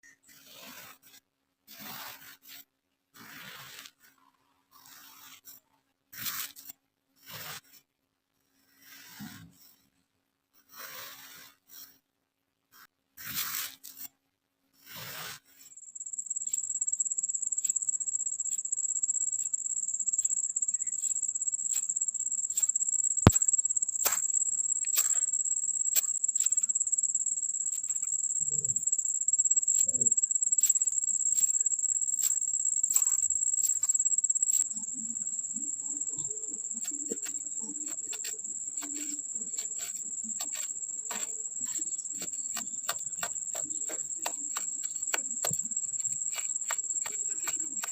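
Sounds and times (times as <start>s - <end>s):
high-pitched trilling tone: 15.8s - 47.9s
sand clicking and crunching: 16.0s - 35.4s, 36.4s - 47.9s.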